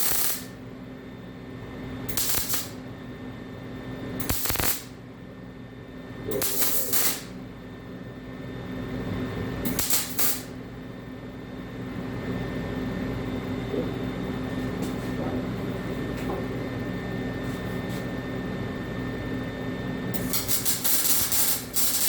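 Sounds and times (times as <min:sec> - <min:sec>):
welder crackling and hissing: 0:00.0 - 0:00.6, 0:02.1 - 0:02.8, 0:04.2 - 0:05.0, 0:06.3 - 0:07.4, 0:09.7 - 0:10.6, 0:20.2 - 0:22.0
machine hum: 0:00.0 - 0:22.0.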